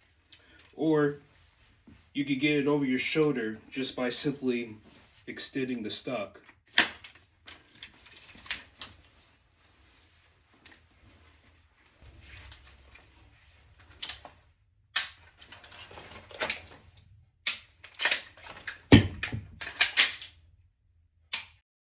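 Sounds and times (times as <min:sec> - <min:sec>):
sling rustling: 0:00.0 - 0:02.6, 0:04.1 - 0:05.4, 0:07.2 - 0:14.6
sharp clicks and knocks of rifle: 0:14.9 - 0:15.3, 0:17.4 - 0:20.4, 0:21.3 - 0:21.6.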